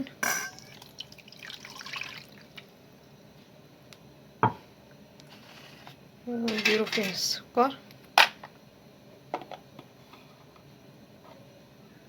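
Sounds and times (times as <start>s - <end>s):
liquid pouring and splashing: 0.5s - 2.6s.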